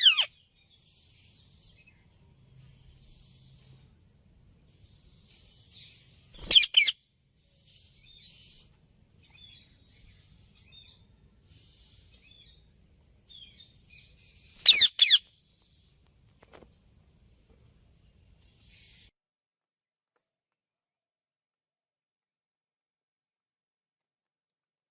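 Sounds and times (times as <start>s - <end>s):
parrot scratchy chattering: 0.0s - 0.3s, 6.5s - 6.9s.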